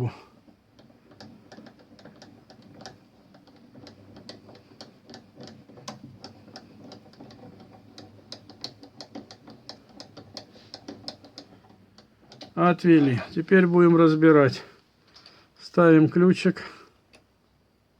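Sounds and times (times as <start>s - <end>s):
milling fixture clicking: 0.0s - 14.3s.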